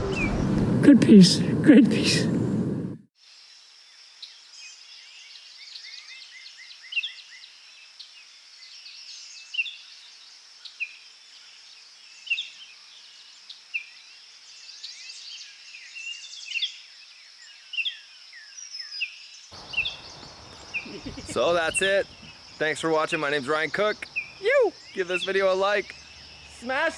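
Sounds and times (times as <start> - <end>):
sharp falling bird calls: 19.6 - 26.7
high insect buzz: 19.6 - 26.8
birds chirping: 19.6 - 26.9.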